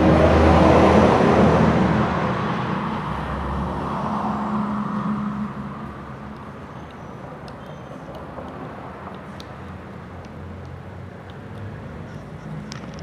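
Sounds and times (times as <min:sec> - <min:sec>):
vehicle passing by: 0:00.0 - 0:06.3.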